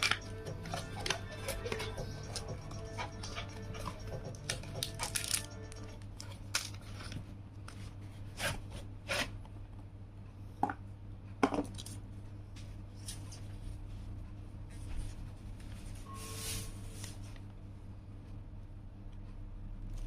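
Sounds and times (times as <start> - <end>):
steady low hum: 0.0 - 20.0
cardboard packaging being opened: 4.5 - 5.5.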